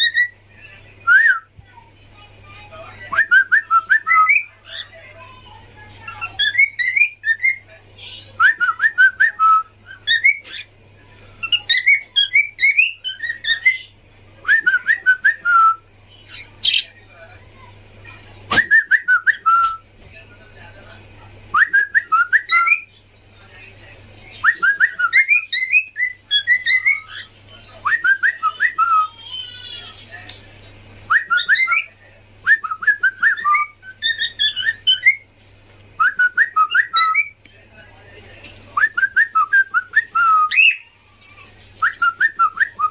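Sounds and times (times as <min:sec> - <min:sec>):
parrots whistling chirps: 0:00.0 - 0:00.4, 0:06.0 - 0:07.6, 0:08.4 - 0:10.7, 0:11.4 - 0:13.9, 0:21.5 - 0:22.9, 0:24.4 - 0:27.3, 0:31.1 - 0:31.9, 0:32.5 - 0:35.3, 0:36.0 - 0:37.4, 0:38.8 - 0:42.9.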